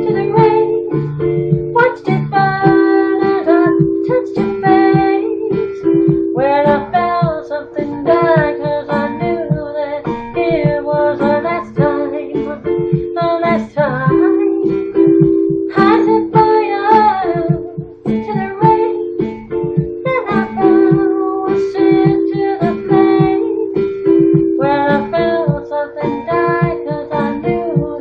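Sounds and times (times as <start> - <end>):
plucked acoustic strings: 0.0 - 9.6
woman singing pop ballad: 0.0 - 28.0.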